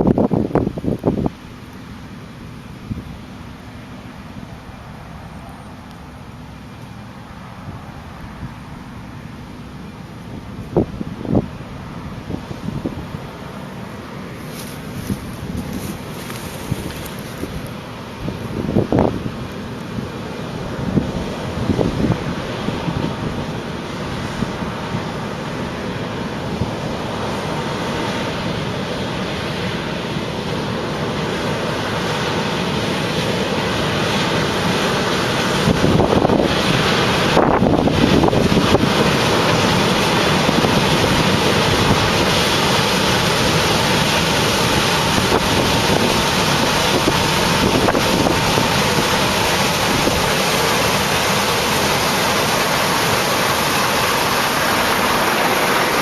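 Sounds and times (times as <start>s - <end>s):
wind buffeting microphone: 0.0s - 1.4s, 10.1s - 13.5s, 14.5s - 25.2s, 35.2s - 56.0s
combine harvester running: 0.0s - 56.0s.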